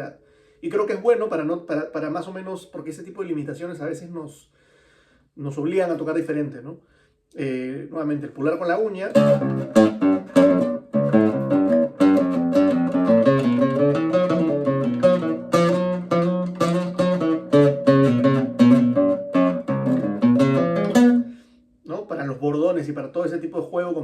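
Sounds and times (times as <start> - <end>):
guitar played with thumb: 9.1 - 21.6.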